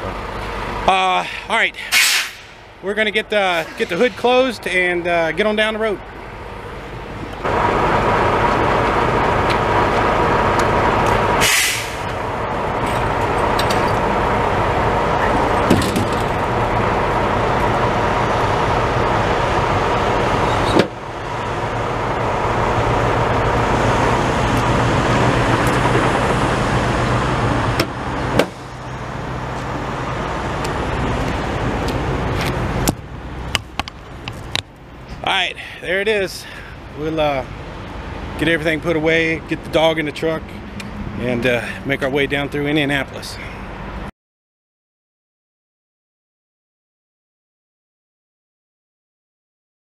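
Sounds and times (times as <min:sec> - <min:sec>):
diesel truck engine: 0:00.0 - 0:44.1
traffic noise: 0:00.0 - 0:44.1
short hiss: 0:01.9 - 0:02.6, 0:11.4 - 0:12.1.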